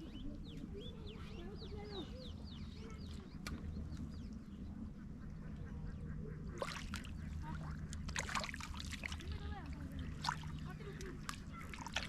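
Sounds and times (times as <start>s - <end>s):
steady low hum: 0.0s - 12.0s
ducks quacking: 4.9s - 8.1s.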